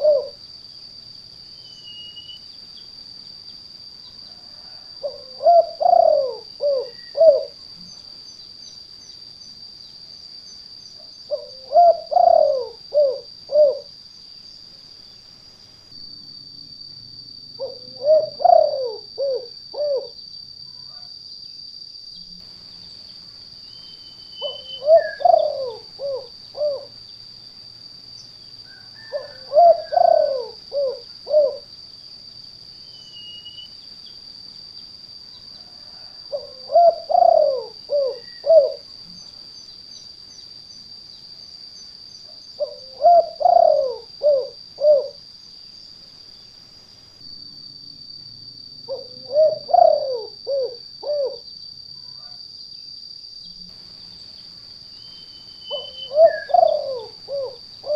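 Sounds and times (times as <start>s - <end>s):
dove cooing: 0.0s - 0.4s, 4.4s - 7.6s, 11.3s - 13.9s, 17.6s - 20.2s, 24.4s - 26.9s, 28.7s - 31.7s, 35.6s - 38.9s, 42.6s - 45.2s, 48.9s - 51.5s, 55.7s - 57.9s.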